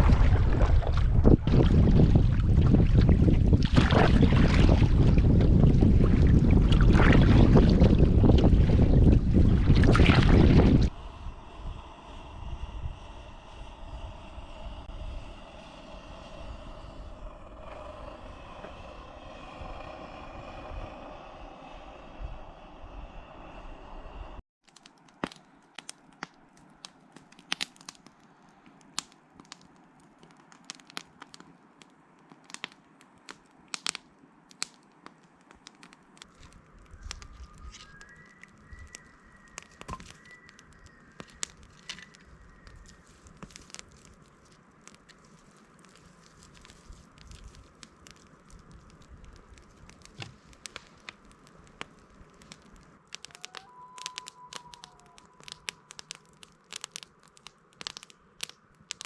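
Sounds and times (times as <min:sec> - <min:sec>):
campfire crackling and popping: 0:24.6 - 0:59.0
faint high whistled notes: 0:37.0 - 0:41.2.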